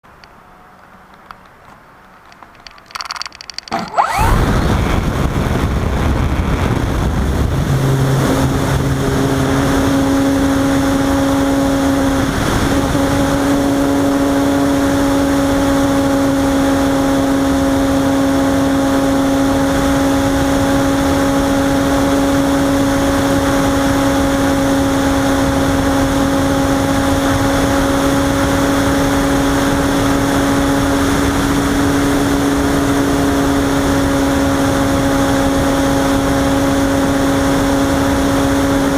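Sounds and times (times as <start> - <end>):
electric motor and propeller: 2.3 - 38.9
rush of air: 3.7 - 11.1.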